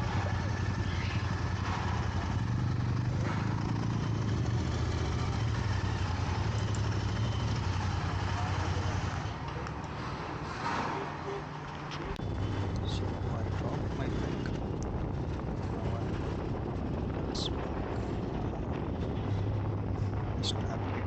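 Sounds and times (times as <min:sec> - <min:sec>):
motorcycle engine idling: 0:00.0 - 0:09.8.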